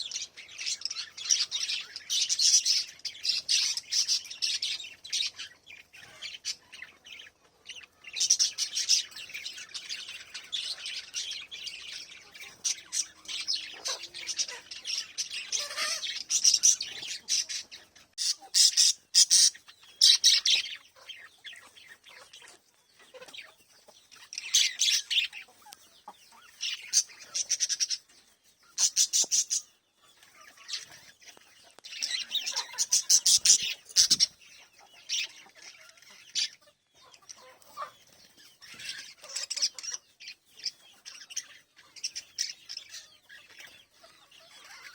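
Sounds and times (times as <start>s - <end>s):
parrots twittering: 0.0s - 22.5s, 31.8s - 34.3s.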